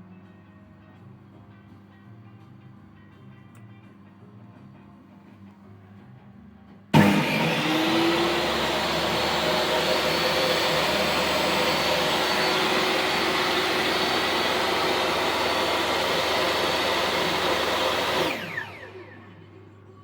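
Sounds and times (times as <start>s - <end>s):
saw motor winding down: 7.0s - 19.4s
table saw running: 7.0s - 19.4s.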